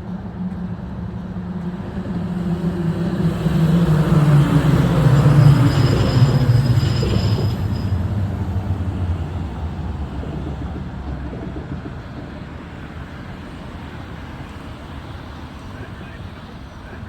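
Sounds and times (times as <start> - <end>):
freight train rumbling past: 0.0 - 17.0
high wheel squeal: 3.8 - 8.7.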